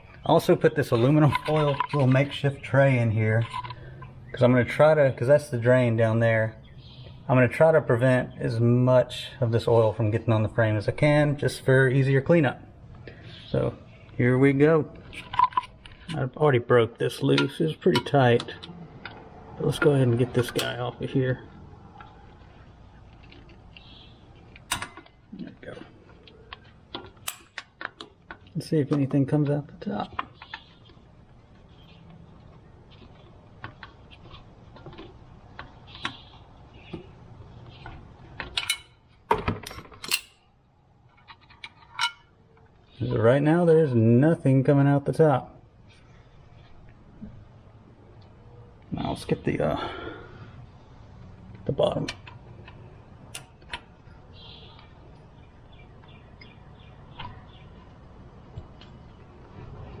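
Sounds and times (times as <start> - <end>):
faint bird chirps: 54.2 - 57.9.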